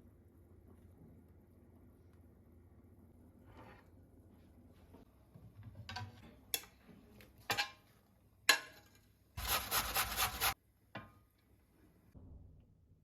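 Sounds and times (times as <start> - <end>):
rough scraping rub: 9.4 - 10.6.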